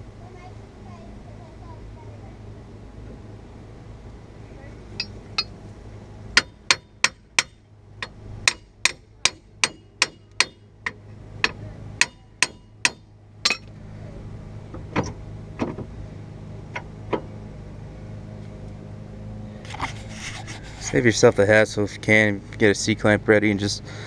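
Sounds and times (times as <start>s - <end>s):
hammer striking metal: 5.0s - 5.6s, 6.4s - 10.7s, 11.4s - 13.7s.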